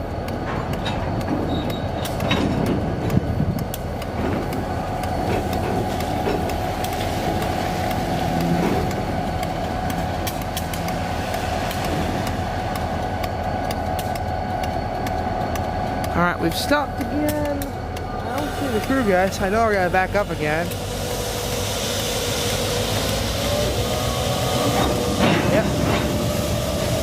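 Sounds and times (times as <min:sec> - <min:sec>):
diesel locomotives running: 0:00.0 - 0:27.0
freight cars clicking and clanking: 0:00.0 - 0:27.0.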